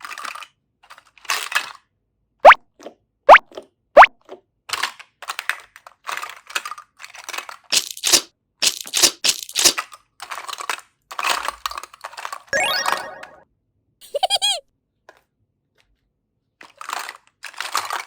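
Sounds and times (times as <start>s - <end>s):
rising cartoon chirp: 12.6s - 13.4s.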